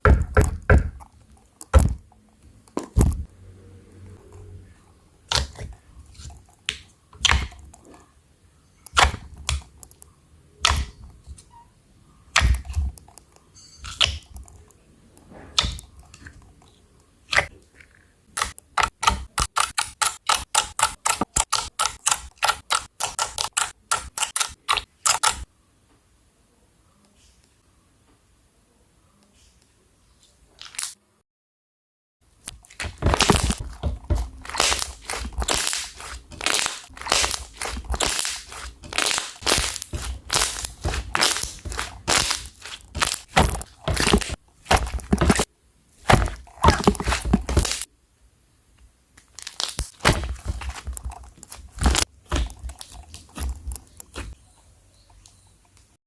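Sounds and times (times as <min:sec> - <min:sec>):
slime popping wetly: 0:32.6 - 0:45.4, 0:46.0 - 0:47.8.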